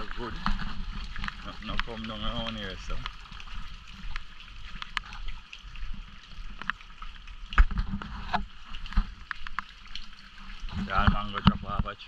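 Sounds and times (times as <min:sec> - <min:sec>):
rain falling: 0:00.0 - 0:11.5
wind rumbling on microphone: 0:00.0 - 0:12.0
drops ticking: 0:01.0 - 0:07.7.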